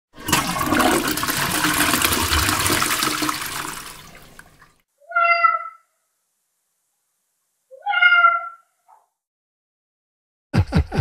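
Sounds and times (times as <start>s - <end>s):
rushing water: 0.2s - 4.8s.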